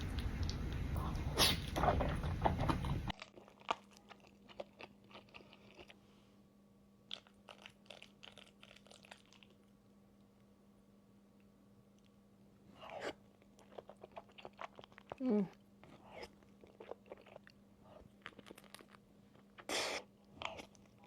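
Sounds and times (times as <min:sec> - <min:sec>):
biting and crunching food: 0:00.0 - 0:06.0, 0:07.1 - 0:09.6, 0:12.9 - 0:21.0
faint chewing: 0:00.0 - 0:06.2, 0:07.1 - 0:10.5, 0:11.4 - 0:21.0.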